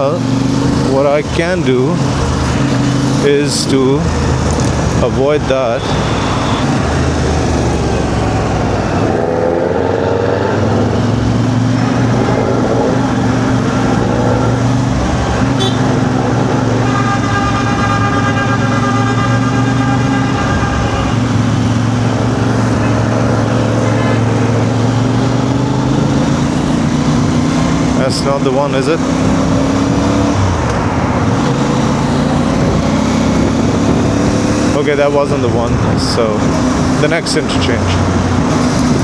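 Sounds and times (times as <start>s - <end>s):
heavy traffic: 0.0s - 39.0s
motorcycle engine running: 0.0s - 39.0s
vehicle horn: 5.5s - 7.3s, 11.8s - 25.2s.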